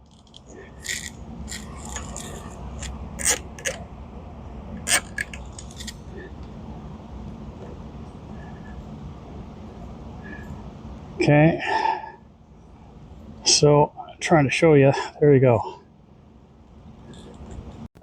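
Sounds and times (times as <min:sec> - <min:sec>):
zip tie clicks and scrapes: 0:00.0 - 0:03.8, 0:04.9 - 0:06.1
steady low rumble: 0:00.0 - 0:17.9.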